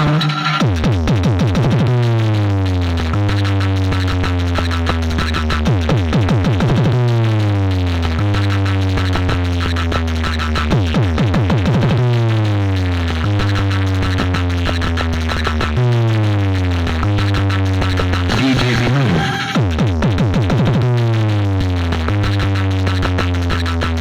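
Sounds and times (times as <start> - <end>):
electronic dance music: 0.0 - 1.6, 18.1 - 19.9.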